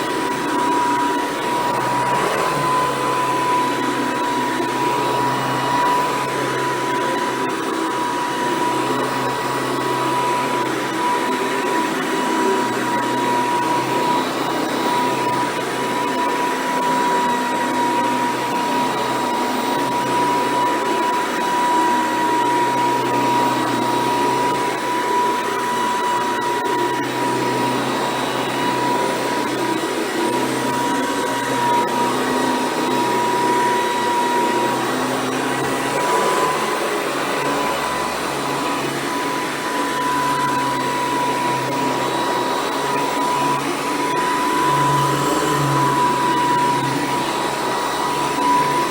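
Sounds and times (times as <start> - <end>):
vacuum cleaner running: 0.0 - 48.9.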